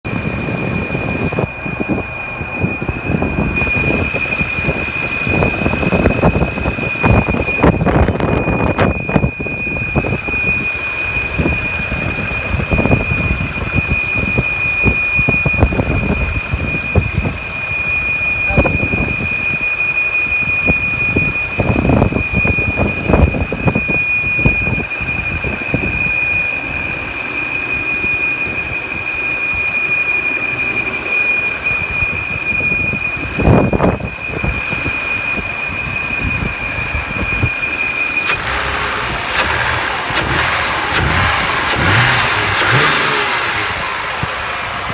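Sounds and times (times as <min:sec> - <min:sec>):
high-pitched engine whistle: 0:00.0 - 0:44.9
car engine running: 0:03.6 - 0:08.8, 0:38.1 - 0:44.9.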